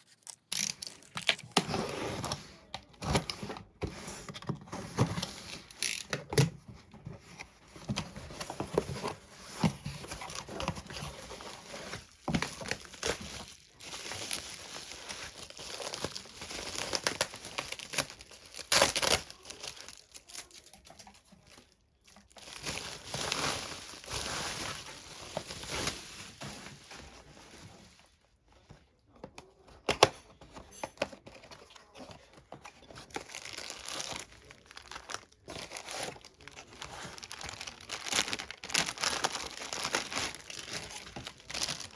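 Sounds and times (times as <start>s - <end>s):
packaging crinkling and tearing: 0.0s - 2.2s, 7.8s - 27.6s, 31.0s - 41.9s.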